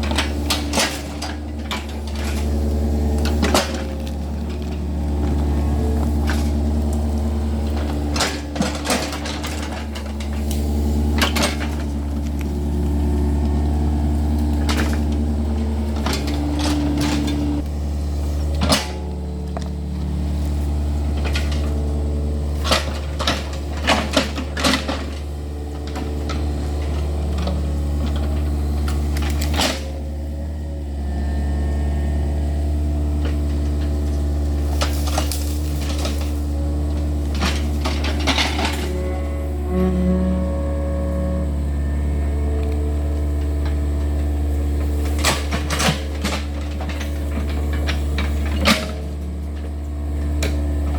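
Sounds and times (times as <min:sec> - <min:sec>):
excavator diesel engine running: 0:00.0 - 0:50.9
metallic clanks and knocks: 0:18.3 - 0:19.8, 0:34.7 - 0:40.4.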